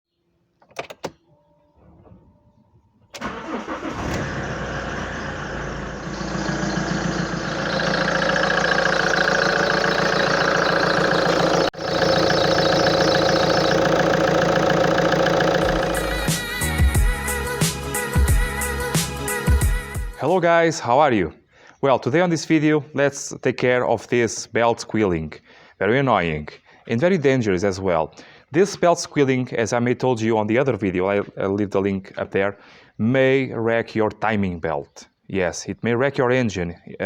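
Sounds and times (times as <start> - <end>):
drive belt squealing: 3.2 - 16.1
car engine starting and running: 3.2 - 16.7.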